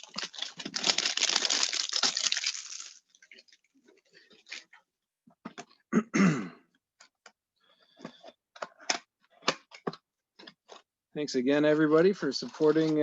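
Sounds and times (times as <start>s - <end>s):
person clearing throat: 5.9s - 6.7s.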